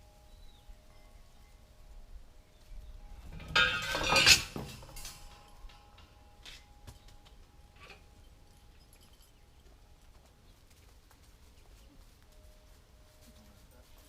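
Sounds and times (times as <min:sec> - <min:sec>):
metal clanking and rattling: 0:03.1 - 0:09.4.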